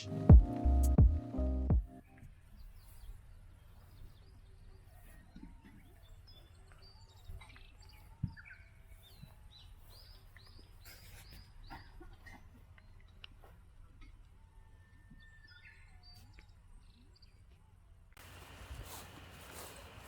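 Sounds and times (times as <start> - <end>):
birds chirping: 18.2 - 20.0.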